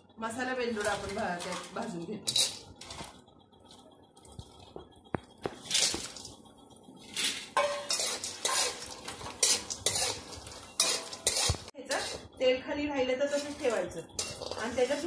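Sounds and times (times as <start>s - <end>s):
metal spoon scraping a pan: 0.7s - 3.2s, 5.6s - 6.3s, 7.0s - 15.0s
spices sizzling in oil: 7.0s - 15.0s.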